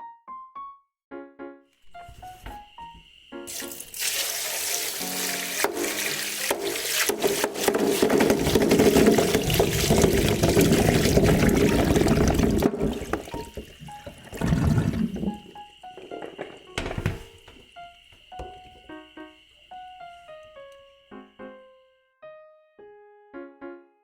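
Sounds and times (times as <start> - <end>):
soft piano music: 0.0 - 7.7, 15.0 - 24.0
water pouring: 3.5 - 17.6.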